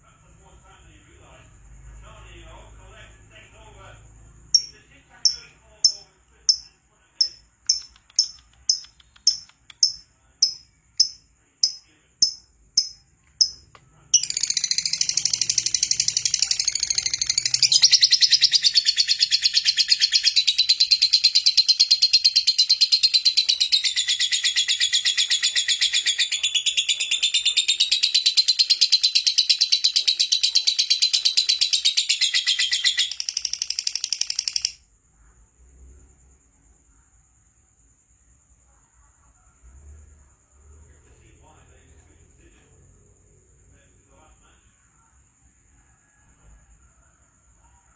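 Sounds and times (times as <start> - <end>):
bird chirping: 4.6 - 34.8
bird rapid trill: 4.6 - 34.8.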